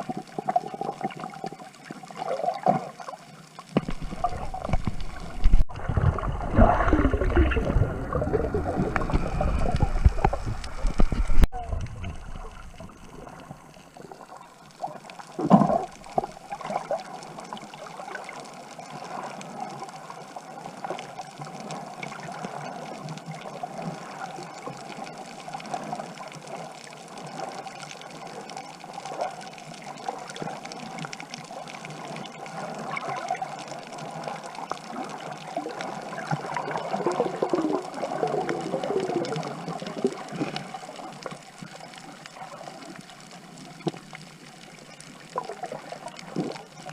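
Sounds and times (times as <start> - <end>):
water splash: 3.7 - 13.4
water sloshing and trickling: 3.7 - 14.8.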